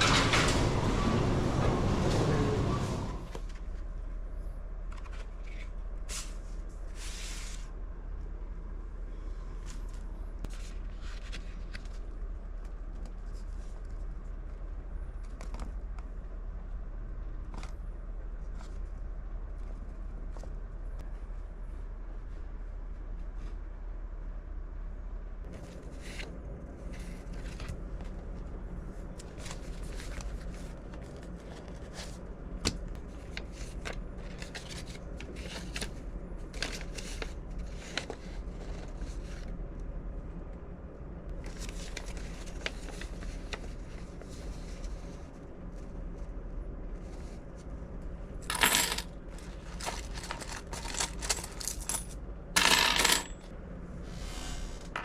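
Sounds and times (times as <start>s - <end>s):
low steady hum: 0.0s - 55.0s
coins clinking: 48.4s - 49.1s, 49.7s - 53.4s.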